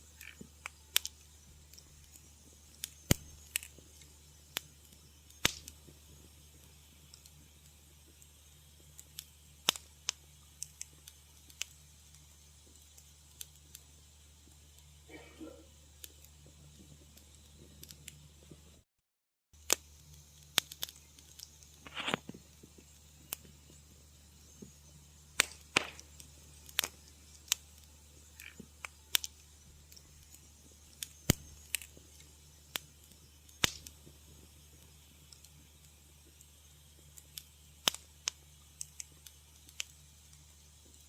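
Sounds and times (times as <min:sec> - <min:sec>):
wood fire crackling: 0:00.0 - 0:18.8, 0:19.6 - 0:41.0
hissing pop: 0:05.4 - 0:05.8, 0:19.7 - 0:22.4, 0:25.3 - 0:27.6, 0:33.5 - 0:34.1.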